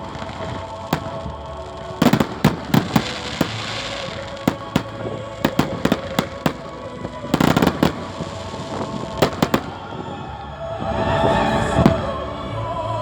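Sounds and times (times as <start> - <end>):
firecracker bangs: 0.0 - 10.4
firework fizzing hiss: 0.0 - 12.1.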